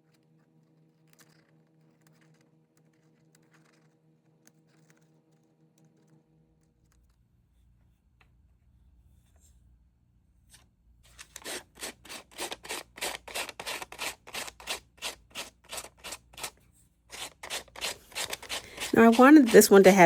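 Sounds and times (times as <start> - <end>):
sandpaper rubbing wood block: 11.2 - 20.0.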